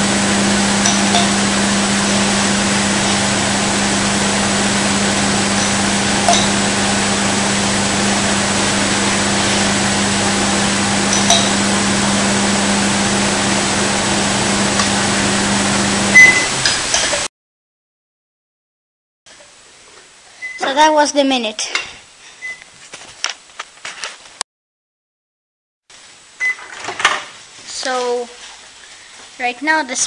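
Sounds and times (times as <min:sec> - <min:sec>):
microwave oven humming: 0:00.0 - 0:16.9
microwave beep: 0:00.2 - 0:16.7, 0:20.4 - 0:20.6, 0:22.4 - 0:22.6, 0:26.4 - 0:26.7.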